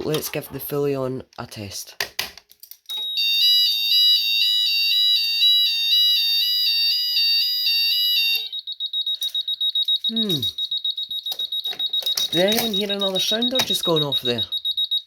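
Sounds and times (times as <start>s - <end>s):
two-tone fire alarm: 2.9s - 15.0s
high-pitched pulsing beep: 8.9s - 15.0s.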